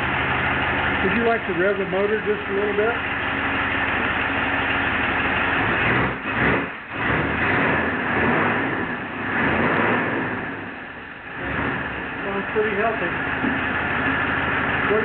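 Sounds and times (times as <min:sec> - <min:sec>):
car engine idling and revving: 0:00.0 - 0:15.0.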